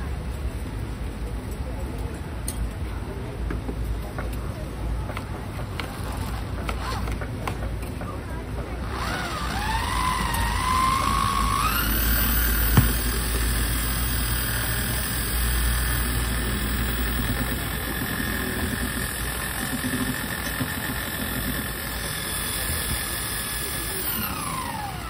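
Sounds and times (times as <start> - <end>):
small motor running at high speed: 8.8 - 25.0.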